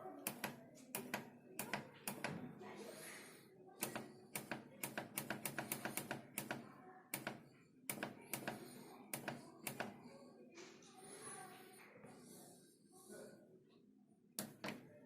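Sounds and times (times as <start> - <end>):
rapid sharp clicks: 0.2 - 2.4, 3.8 - 10.0.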